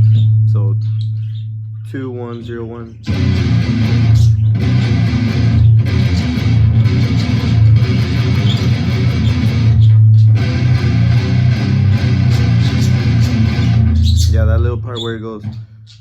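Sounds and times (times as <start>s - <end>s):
electric guitar playing choppy riff: 0.0s - 15.9s.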